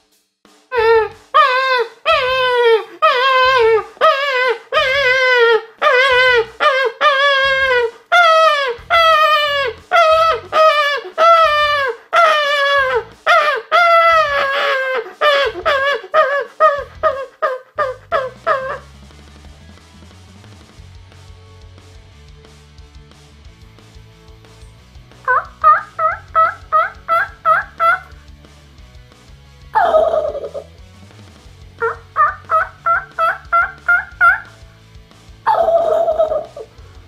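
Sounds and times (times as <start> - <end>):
man making animal calls: 0.7 - 18.9, 25.2 - 28.2, 29.7 - 30.7, 31.8 - 34.6, 35.4 - 36.8.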